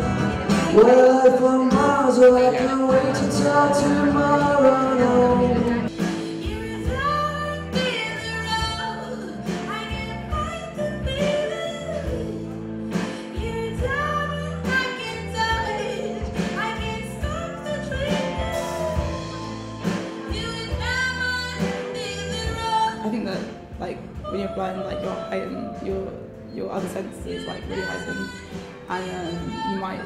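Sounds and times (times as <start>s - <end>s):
person singing: 0.0s - 23.1s
steady drum beat: 0.0s - 26.1s
band playing: 0.0s - 30.0s.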